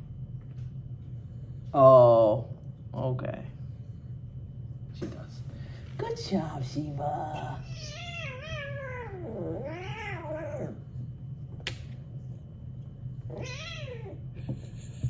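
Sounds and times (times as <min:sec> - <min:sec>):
steady low hum: 0:00.0 - 0:15.0
cat meowing: 0:07.3 - 0:10.8, 0:13.3 - 0:14.4.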